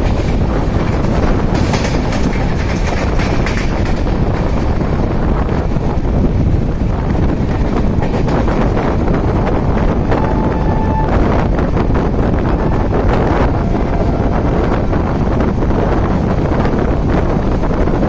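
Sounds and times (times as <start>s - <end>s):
train wheels rumbling and clicking: 0.0s - 18.0s
wind buffeting microphone: 0.0s - 18.0s.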